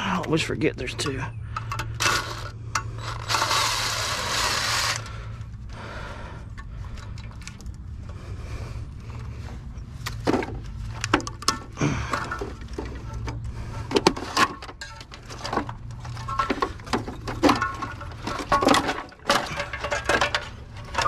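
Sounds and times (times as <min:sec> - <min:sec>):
steady low hum: 0:00.0 - 0:21.0
harsh scraping on metal: 0:01.6 - 0:05.2.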